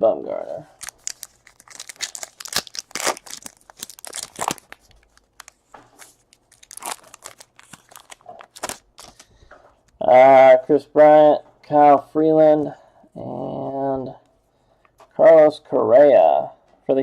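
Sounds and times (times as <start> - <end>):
wrappers crinkling and tearing: 0.7 - 9.3
cards being handled: 0.8 - 10.0.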